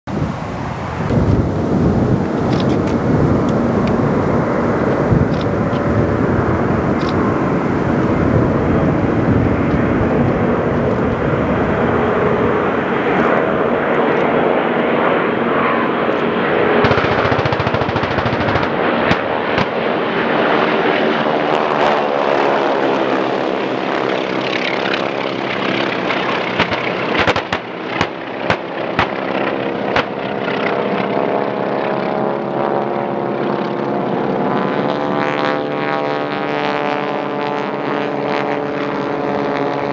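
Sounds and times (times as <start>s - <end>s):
propeller plane engines droning: 0.1s - 39.9s
sharp clicks or pops: 26.6s - 29.2s.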